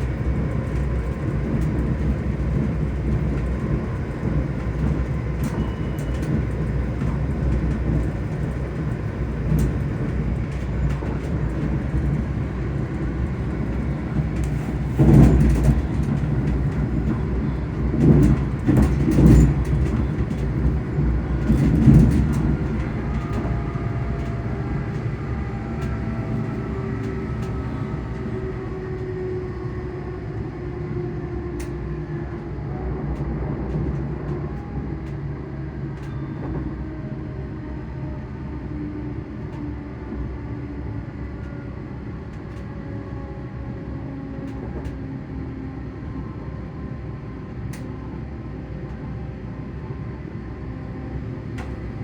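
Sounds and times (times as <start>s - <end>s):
train bumps: 0.0s - 30.1s
traction motors humming: 0.0s - 30.4s
train wheels rumbling on track: 0.0s - 52.0s.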